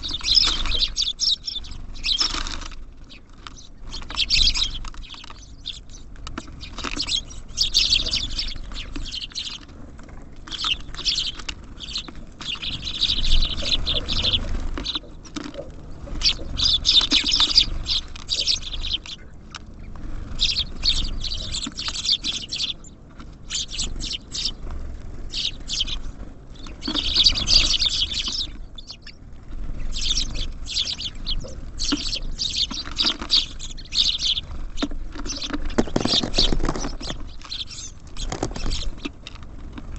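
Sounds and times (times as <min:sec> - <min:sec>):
birds pattering on feeder: 0:00.0 - 0:39.9
songbirds chirping: 0:00.0 - 0:39.9.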